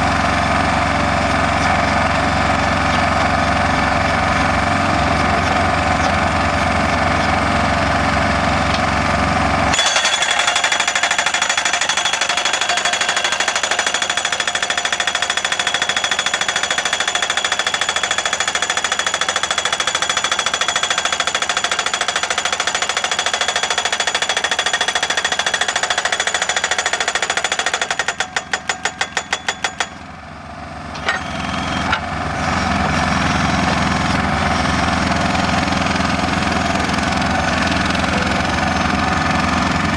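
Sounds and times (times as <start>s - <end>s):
pile driver hammer pounding post: 9.7s - 30.0s
machine engine running: 30.3s - 39.9s.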